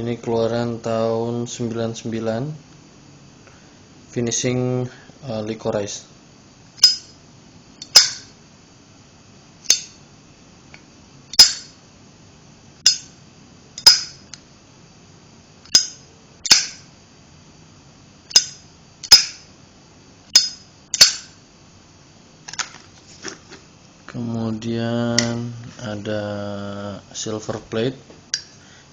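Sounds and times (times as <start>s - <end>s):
lighter lid clicking open and shut: 15.7s - 16.8s.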